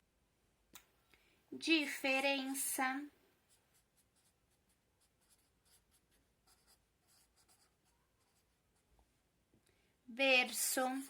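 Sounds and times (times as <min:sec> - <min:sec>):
pen scratching while writing: 0:03.5 - 0:08.5.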